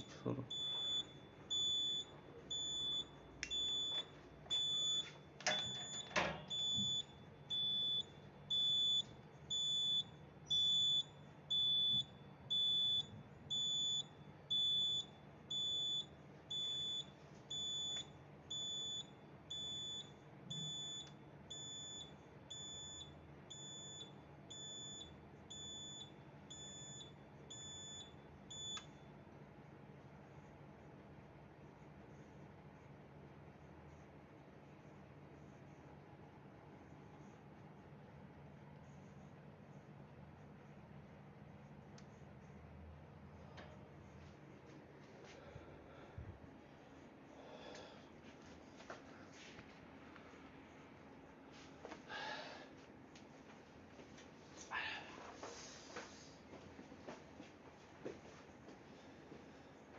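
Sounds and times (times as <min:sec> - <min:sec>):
fire alarm high-pitched beeps: 0:00.5 - 0:28.9.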